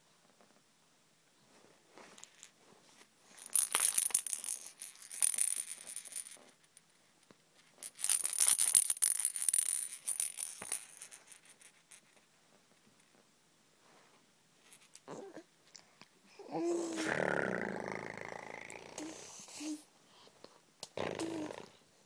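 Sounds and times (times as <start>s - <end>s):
person hissing with mouth: 16.6s - 19.8s.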